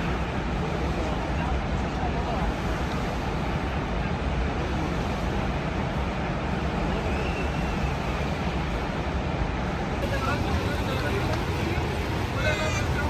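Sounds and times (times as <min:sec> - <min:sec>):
waterfall roaring: 0:09.6 - 0:13.0.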